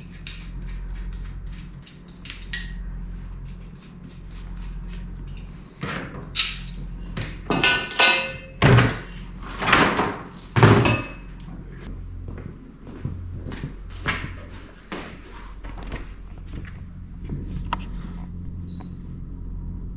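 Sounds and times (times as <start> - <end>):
low hum: 0.0 - 19.9
metal hardware knocks and clanks: 5.3 - 11.4.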